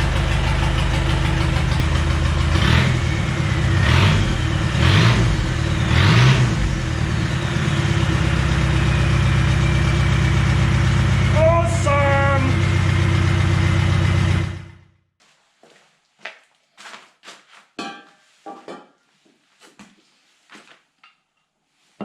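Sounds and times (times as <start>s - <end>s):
diesel engine idling and revving: 0.0s - 15.0s.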